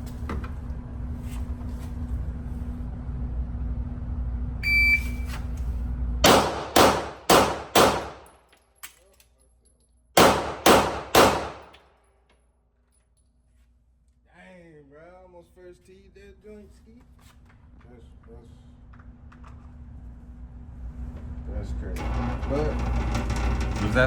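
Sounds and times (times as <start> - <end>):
shot timer beep: 4.6 - 5.3
handgun shots: 6.2 - 8.3, 10.2 - 11.8.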